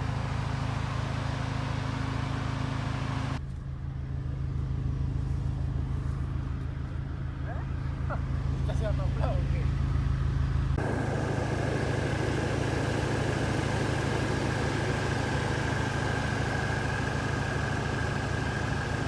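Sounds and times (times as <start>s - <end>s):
car engine idling: 0.0s - 19.0s
thin steady whine: 4.2s - 19.0s.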